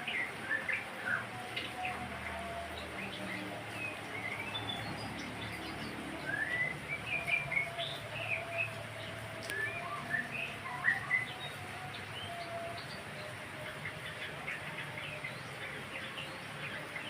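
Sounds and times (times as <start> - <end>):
bird singing chirps and whistles: 3.8 - 8.7, 9.4 - 13.1.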